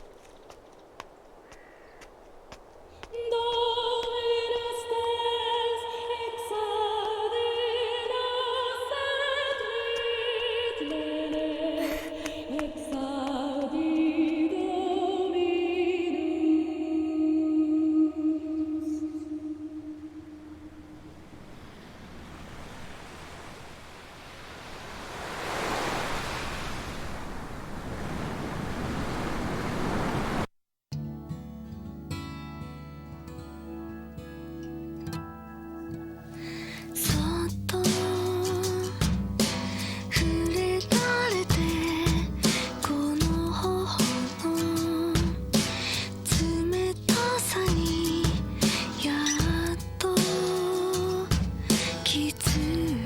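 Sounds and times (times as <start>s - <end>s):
ocean surf rushing: 19.5s - 30.5s.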